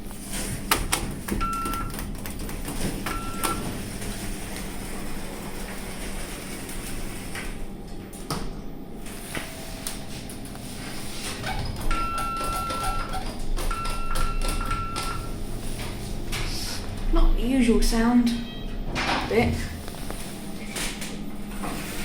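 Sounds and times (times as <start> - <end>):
short electronic beep: 18.4 - 18.8.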